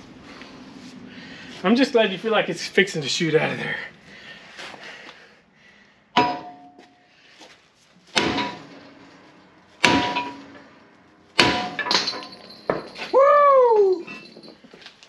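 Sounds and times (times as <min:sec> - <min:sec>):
hammer striking metal: 0:06.2 - 0:07.0, 0:08.1 - 0:13.1.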